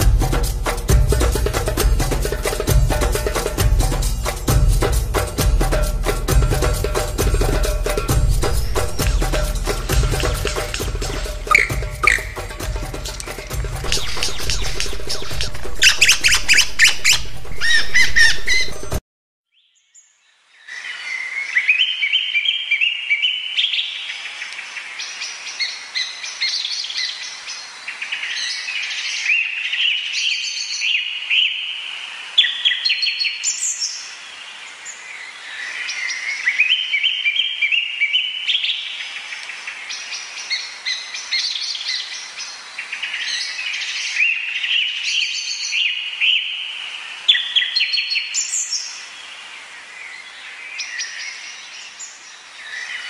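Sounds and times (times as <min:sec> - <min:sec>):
music: 0:00.0 - 0:19.0
bird chirps: 0:08.1 - 0:23.9
birds singing: 0:08.2 - 0:31.8, 0:32.4 - 0:53.0.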